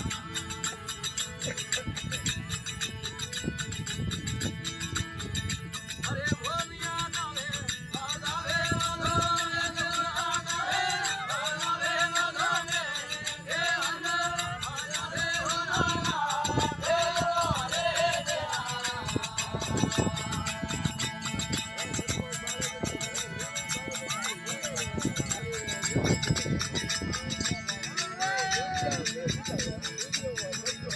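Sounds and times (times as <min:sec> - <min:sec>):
folk devotional song: 0:00.0 - 0:30.9
percussion with rattling jingles: 0:00.0 - 0:30.9.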